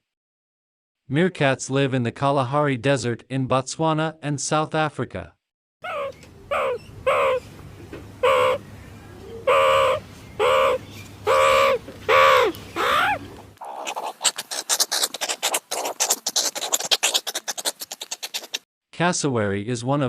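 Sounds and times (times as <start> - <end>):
animal harsh caw-like calls: 5.8 - 7.4, 8.2 - 8.6, 9.4 - 18.6
scratching crackling clicks: 13.6 - 18.6.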